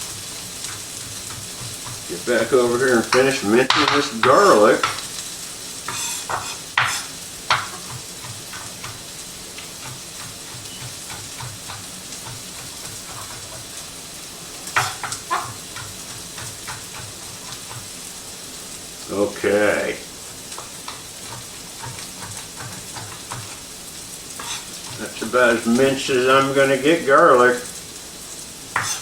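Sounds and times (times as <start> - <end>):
vegetables sizzling in frying pan: 0.0 - 29.0
knife chopping on cutting board: 0.5 - 2.1, 5.9 - 13.8, 14.6 - 17.9, 20.5 - 23.7, 24.4 - 25.0, 28.8 - 29.0.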